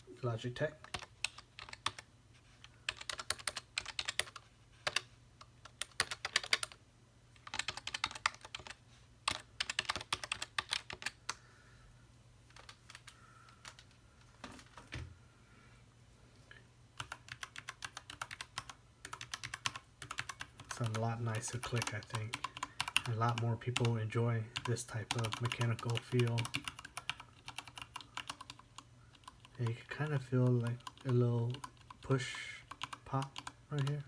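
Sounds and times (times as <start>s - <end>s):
typing on a keyboard: 0.8s - 2.1s, 2.9s - 6.8s, 7.4s - 11.4s, 17.0s - 24.0s, 24.6s - 32.0s, 32.6s - 34.0s.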